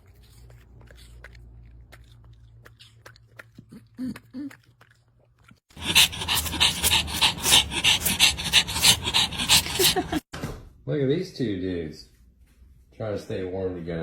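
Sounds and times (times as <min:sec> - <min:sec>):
dog panting: 0:05.7 - 0:10.3.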